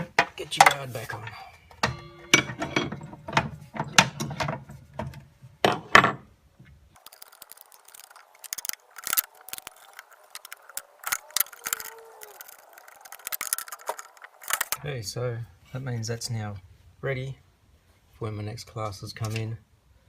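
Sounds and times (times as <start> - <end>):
metal clicks and rattles of saw guard: 7.0 - 14.8.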